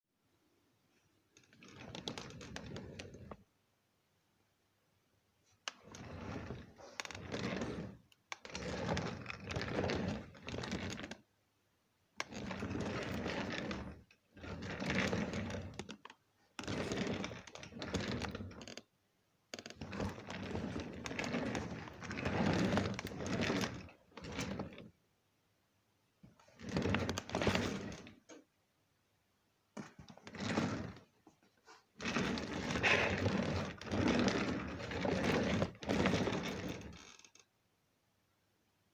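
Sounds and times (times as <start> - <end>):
chair casters rolling on parquet: 1.4 - 3.4, 5.6 - 11.2, 12.2 - 18.8, 19.6 - 24.9, 26.4 - 28.4, 29.8 - 31.1, 32.0 - 37.4.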